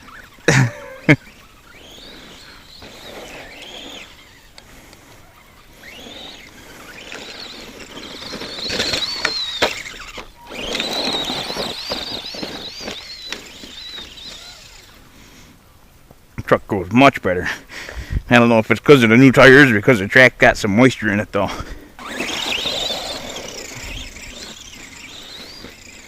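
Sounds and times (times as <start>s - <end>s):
tires rushing on dirt: 0.0s - 15.0s, 22.0s - 26.0s
rc truck motor whine: 0.0s - 15.4s, 22.0s - 26.0s.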